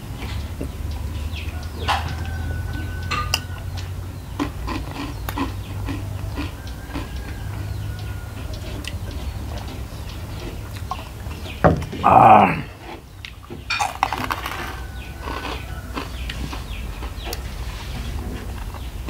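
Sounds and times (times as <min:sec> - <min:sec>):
person chewing: 0:04.3 - 0:11.4, 0:12.1 - 0:18.8.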